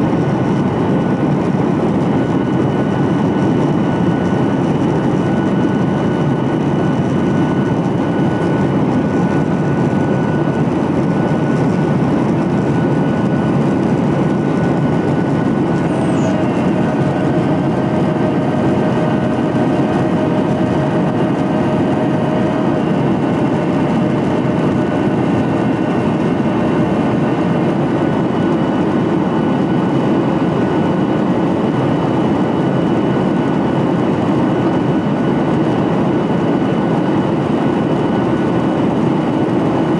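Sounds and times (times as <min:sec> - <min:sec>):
jet engine whining tones: 0:00.0 - 0:39.9
jet engines rumbling: 0:00.0 - 0:39.9.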